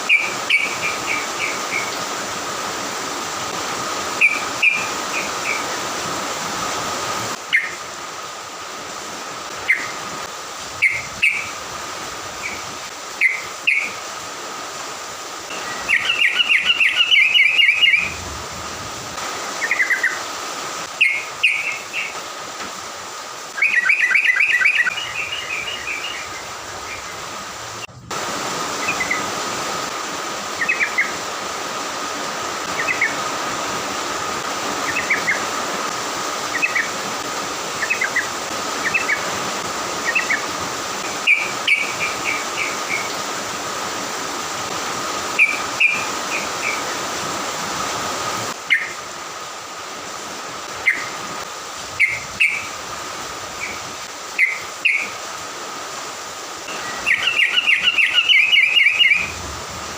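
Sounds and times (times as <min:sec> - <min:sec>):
songbird chirping: 0:00.0 - 0:02.1, 0:09.5 - 0:10.1, 0:12.4 - 0:14.1, 0:15.5 - 0:18.4, 0:19.5 - 0:22.3, 0:23.5 - 0:27.9, 0:50.7 - 0:51.2, 0:51.9 - 0:52.8, 0:53.6 - 0:55.2, 0:56.6 - 0:59.4
steady hiss: 0:00.0 - 0:59.9.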